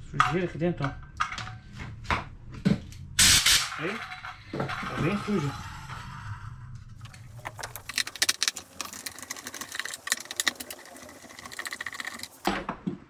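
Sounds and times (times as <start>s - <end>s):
blade scraping vacuum turbine: 4.6s - 12.4s.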